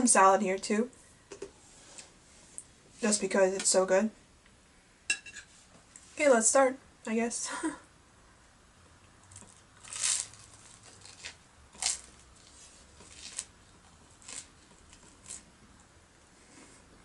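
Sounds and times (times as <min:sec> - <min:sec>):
toast crunching: 0:09.3 - 0:15.5.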